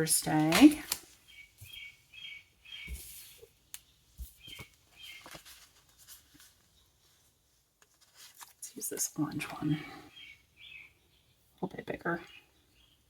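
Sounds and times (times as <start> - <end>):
bird chirping: 1.2 - 5.5, 9.2 - 13.0.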